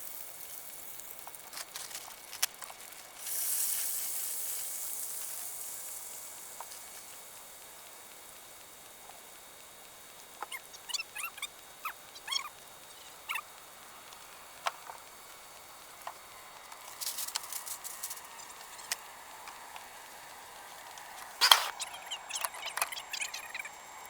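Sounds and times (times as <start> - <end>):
faint steady hiss: 0.0 - 24.0
rustling: 1.2 - 5.4
clicks: 21.0 - 23.4.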